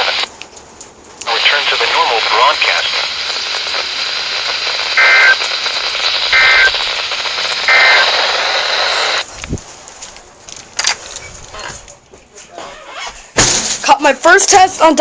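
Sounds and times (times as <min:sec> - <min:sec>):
radio static hiss: 0:00.0 - 0:00.4, 0:01.2 - 0:10.1
warbling two-tone data bursts: 0:04.9 - 0:08.2.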